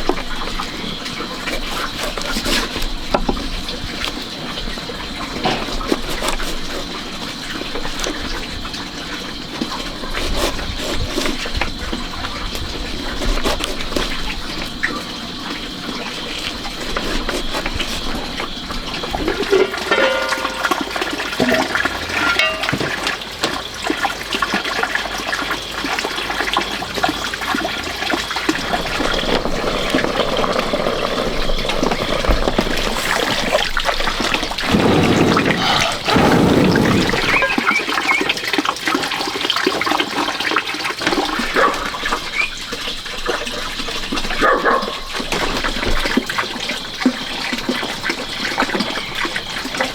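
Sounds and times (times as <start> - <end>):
water running and splashing: 0.0 - 44.4.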